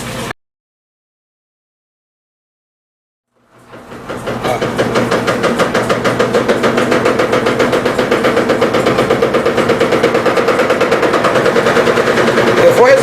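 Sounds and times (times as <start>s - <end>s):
washing machine motor hum: 0.0s - 0.4s, 3.3s - 13.0s
fast even knocking: 3.6s - 13.0s.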